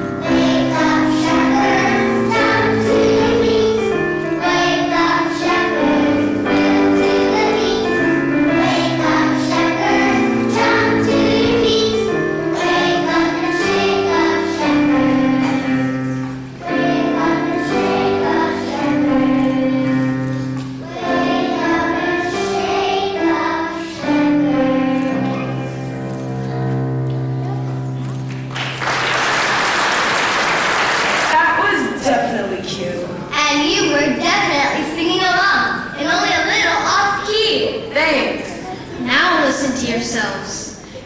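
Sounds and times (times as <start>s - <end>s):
children's choir singing: 0.0s - 27.0s
musical accompaniment: 0.0s - 32.0s.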